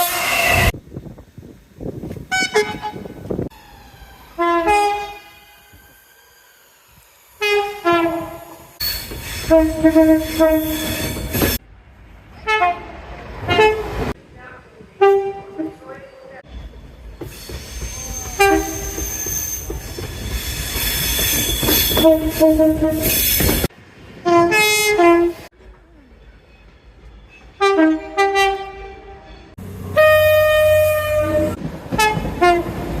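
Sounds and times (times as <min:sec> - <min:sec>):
passing train: 0:00.0 - 0:33.0
train horn blasts: 0:02.3 - 0:03.2, 0:04.3 - 0:05.8, 0:07.4 - 0:08.7, 0:09.4 - 0:11.3, 0:12.4 - 0:14.1, 0:15.0 - 0:16.1, 0:18.3 - 0:19.0, 0:21.8 - 0:23.3, 0:24.2 - 0:25.5, 0:27.6 - 0:33.0.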